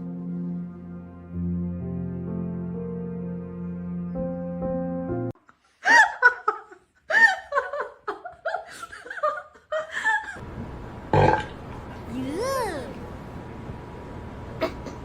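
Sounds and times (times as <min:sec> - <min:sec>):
soft background music: 0:00.0 - 0:05.3.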